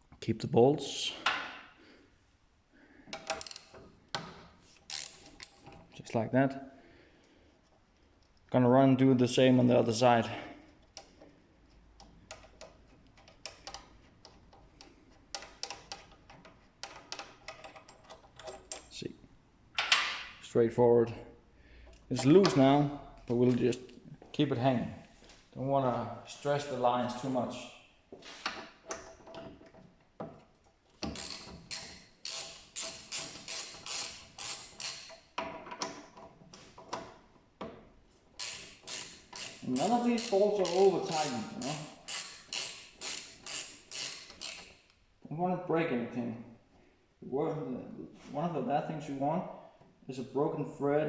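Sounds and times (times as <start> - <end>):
ratchet clicking: 4.9 - 5.6, 31.0 - 35.2, 38.4 - 45.0.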